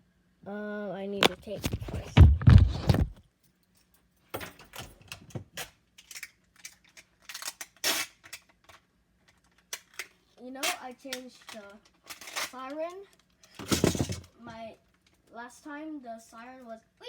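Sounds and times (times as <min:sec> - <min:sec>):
heavy handling bumps: 0:01.2 - 0:03.2
short ripping noises: 0:07.3 - 0:08.4.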